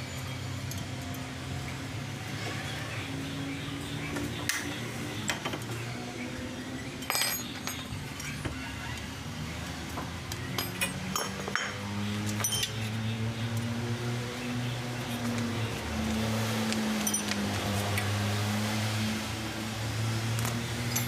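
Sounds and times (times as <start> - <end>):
metal tools clinking on steel: 7.0 - 8.4, 10.4 - 13.0, 17.0 - 18.0, 20.4 - 21.0.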